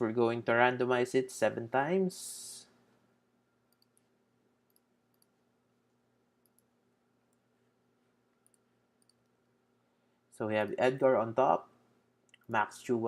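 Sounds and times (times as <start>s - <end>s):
faint steady hum: 0.0s - 13.0s
computer mouse clicks: 3.7s - 4.1s, 4.7s - 5.4s, 6.4s - 6.7s, 8.4s - 9.4s.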